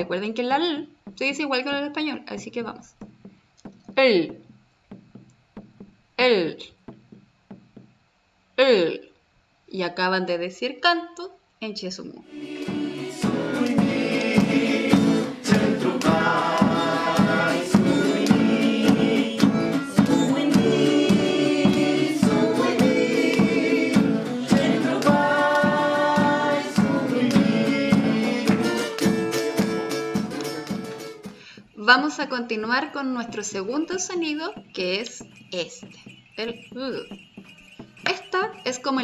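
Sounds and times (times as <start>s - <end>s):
steady percussive beat: 2.9s - 8.3s, 12.2s - 31.4s, 33.2s - 39.0s
people singing: 12.2s - 31.0s.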